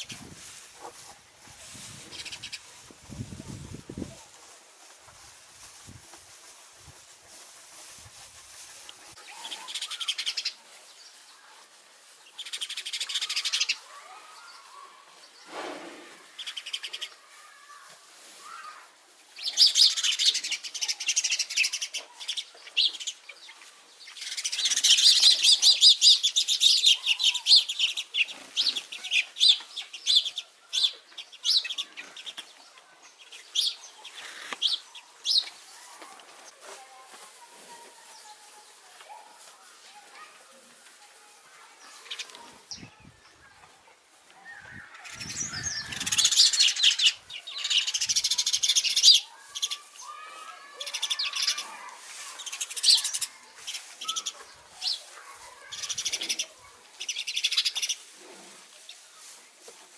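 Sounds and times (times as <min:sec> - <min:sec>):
sparrows chirping: 0:02.1 - 0:02.7, 0:09.2 - 0:11.4, 0:12.2 - 0:15.6, 0:19.4 - 0:35.8, 0:44.5 - 0:58.1.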